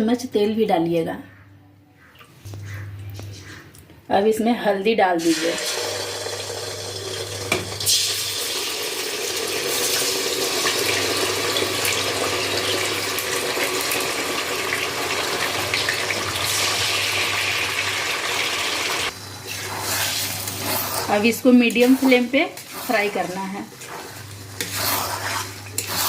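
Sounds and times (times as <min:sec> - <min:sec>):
paste sizzling in hot oil: 0:07.9 - 0:26.0.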